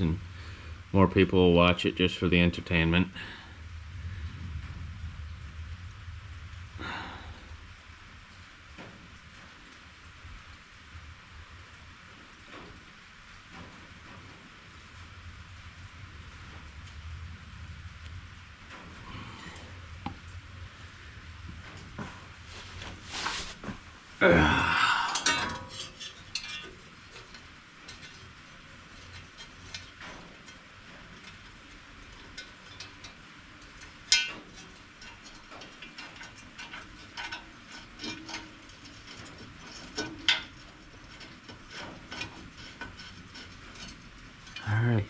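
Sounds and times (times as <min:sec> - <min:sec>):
scraping clatter: 0:16.2 - 0:45.0
metal clicks and clinks of tools: 0:25.0 - 0:28.2, 0:33.8 - 0:44.0.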